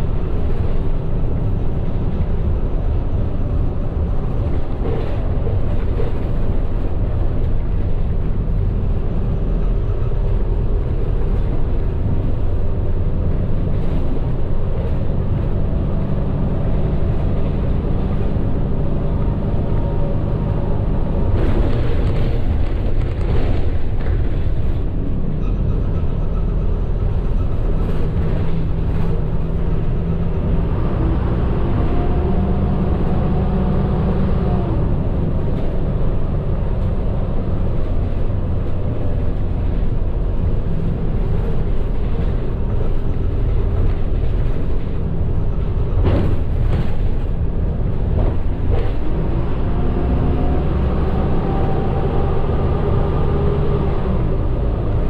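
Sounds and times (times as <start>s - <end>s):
bus engine and road rumble: 0.0s - 55.0s.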